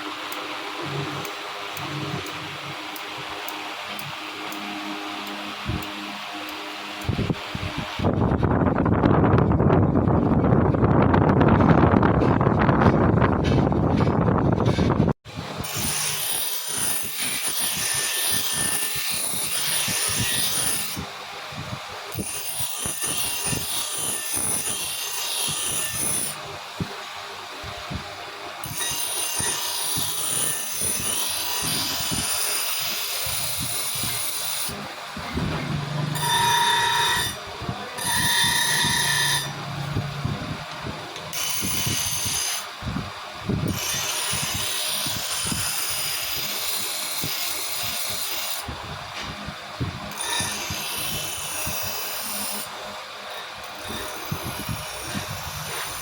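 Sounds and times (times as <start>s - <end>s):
small power tool whining: 28.6s - 48.7s
abrasive scraping on steel: 33.3s - 42.6s.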